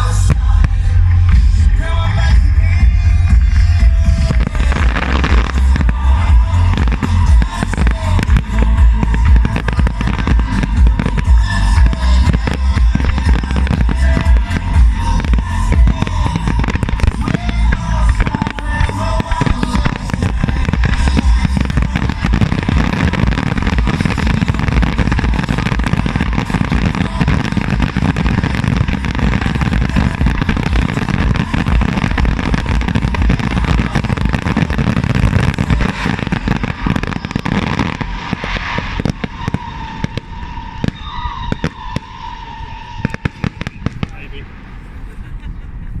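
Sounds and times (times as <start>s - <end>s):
fireworks bangs and crackle: 0.0s - 46.0s.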